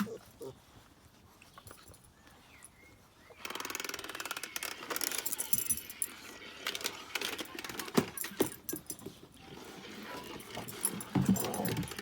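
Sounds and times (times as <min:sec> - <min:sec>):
toy ball rattling and jingling: 0:05.0 - 0:06.3.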